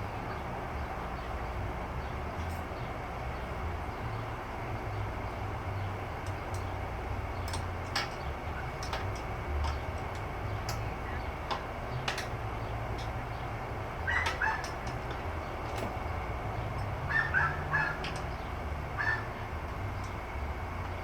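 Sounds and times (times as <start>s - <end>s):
bird calling: 14.0s - 14.9s, 17.0s - 19.4s.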